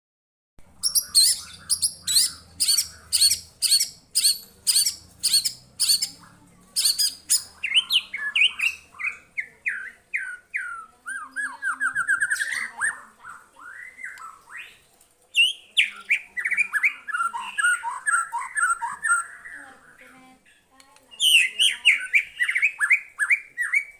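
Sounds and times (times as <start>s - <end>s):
bird singing whistles and trills: 0.8s - 6.2s, 6.8s - 13.0s, 13.6s - 14.8s, 15.4s - 19.6s, 21.2s - 23.9s.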